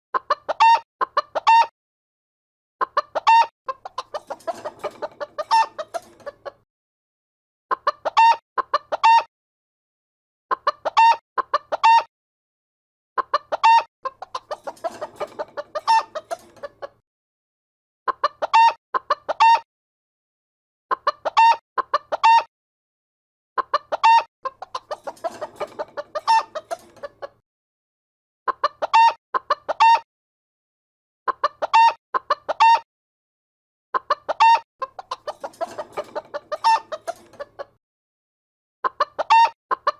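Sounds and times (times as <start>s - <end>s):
chicken clucking and cackling: 0.2s - 1.7s, 2.8s - 6.6s, 7.7s - 9.3s, 10.5s - 12.1s, 13.2s - 17.0s, 18.1s - 19.6s, 20.9s - 22.5s, 23.6s - 27.4s, 28.5s - 30.0s, 31.3s - 32.8s, 34.0s - 37.8s, 38.8s - 39.9s.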